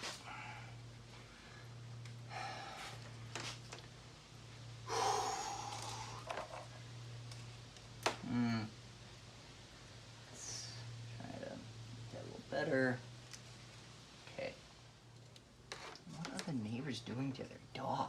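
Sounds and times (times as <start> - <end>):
steady low hum: 0.0 - 18.0
man sighing and exhaling: 4.9 - 6.4
man groaning: 8.2 - 8.7.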